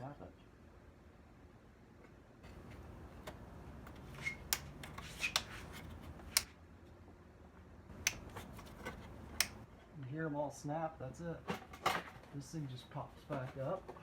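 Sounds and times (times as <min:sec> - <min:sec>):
plastic rubbing and handling: 0:11.5 - 0:14.0.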